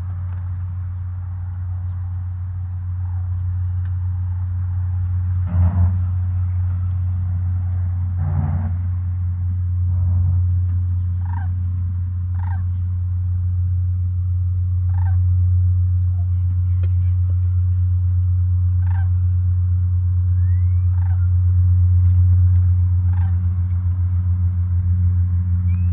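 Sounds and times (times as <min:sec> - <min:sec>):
steady low hum: 0:00.0 - 0:25.9
turkey gobbling: 0:11.2 - 0:11.6, 0:12.3 - 0:12.8, 0:14.9 - 0:15.3, 0:18.7 - 0:19.2, 0:20.4 - 0:21.4, 0:23.0 - 0:24.3.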